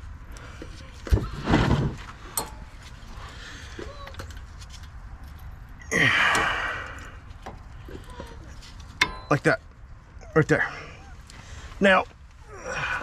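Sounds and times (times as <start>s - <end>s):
metal clinks and knocks: 2.3s - 3.1s, 8.7s - 9.7s.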